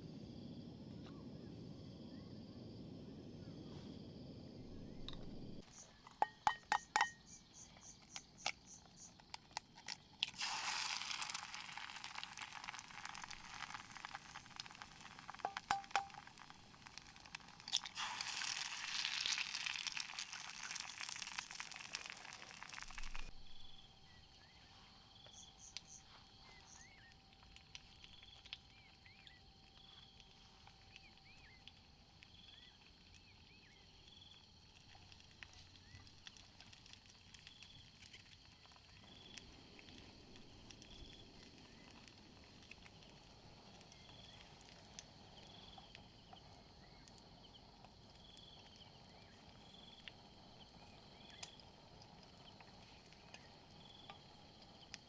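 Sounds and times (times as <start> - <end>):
crackling crinkling hiss: 7.3 - 55.0
faint small chirps: 17.2 - 36.6.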